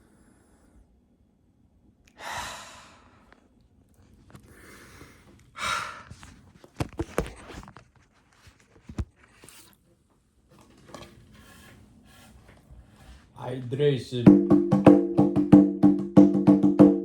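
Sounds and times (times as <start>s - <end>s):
faint room noise: 0.0s - 17.0s
person taking deep breath: 2.2s - 3.4s, 4.4s - 6.3s.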